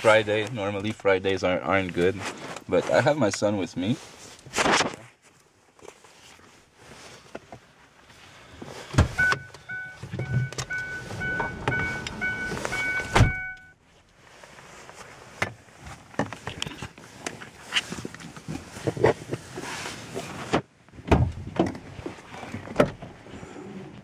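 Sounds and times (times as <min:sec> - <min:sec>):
car door opening: 0:09.0 - 0:13.7
car door shutting: 0:09.0 - 0:13.7
door-ajar warning chime beeps: 0:09.1 - 0:13.8.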